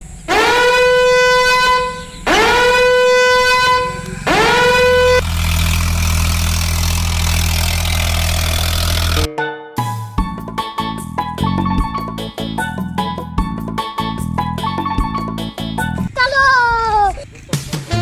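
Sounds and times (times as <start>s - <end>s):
low rumble with hiss: 0.0s - 9.3s
horn blasts: 0.3s - 5.8s.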